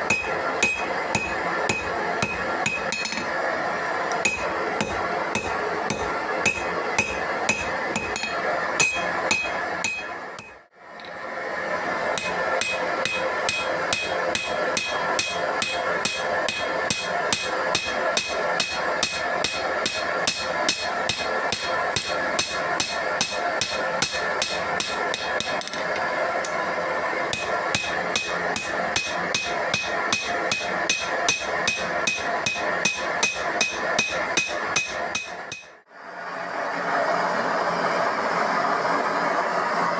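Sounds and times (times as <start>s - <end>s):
hammer striking steel on anvil: 0.0s - 3.5s, 4.1s - 11.2s, 12.1s - 35.8s.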